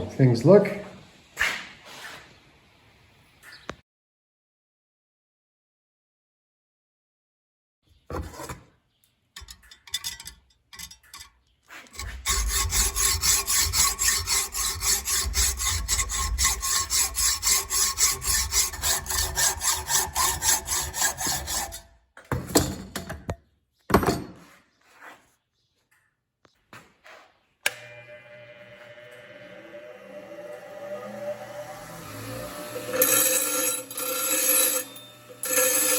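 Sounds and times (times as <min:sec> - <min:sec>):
short scraping bursts: 0:11.7 - 0:21.8
handsaw cutting wood: 0:11.8 - 0:21.9, 0:28.9 - 0:35.9.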